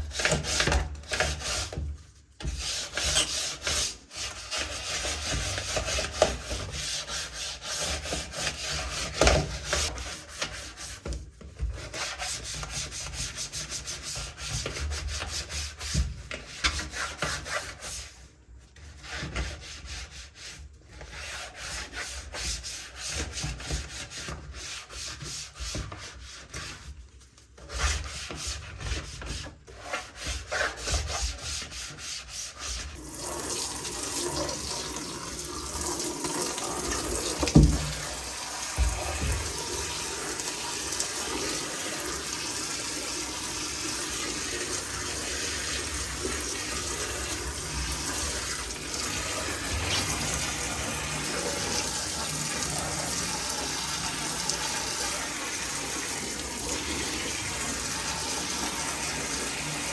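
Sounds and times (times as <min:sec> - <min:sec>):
scrubbing a keyboard: 0:00.1 - 0:59.9
running tap water: 0:02.9 - 0:10.2, 0:32.8 - 0:59.9.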